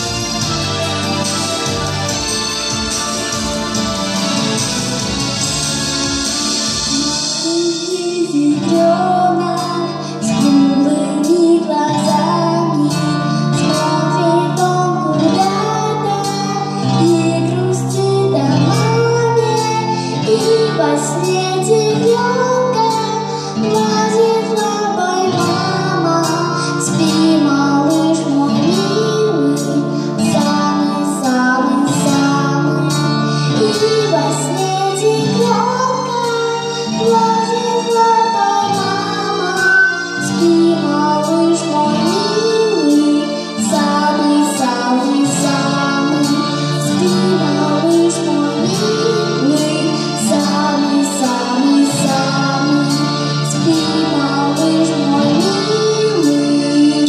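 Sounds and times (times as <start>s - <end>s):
plucked guitar: 0.0s - 57.0s.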